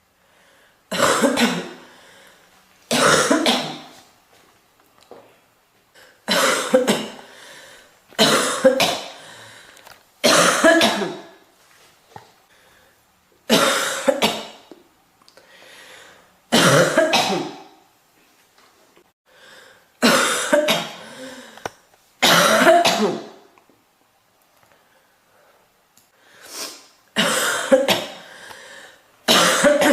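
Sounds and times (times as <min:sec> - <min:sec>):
girl coughing: 0:00.9 - 0:01.8, 0:02.9 - 0:03.9, 0:06.3 - 0:07.2, 0:08.2 - 0:09.2, 0:10.2 - 0:11.3, 0:13.5 - 0:14.6, 0:16.5 - 0:17.7, 0:20.0 - 0:21.5, 0:22.2 - 0:23.4, 0:27.2 - 0:28.2, 0:29.3 - 0:29.9.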